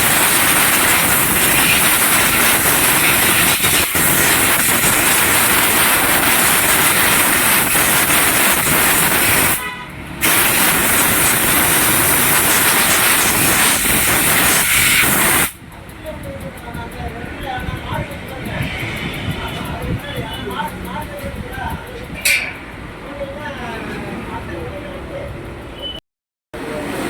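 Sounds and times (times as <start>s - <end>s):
loud steady rushing hiss: 0.0s - 9.6s, 10.2s - 16.1s.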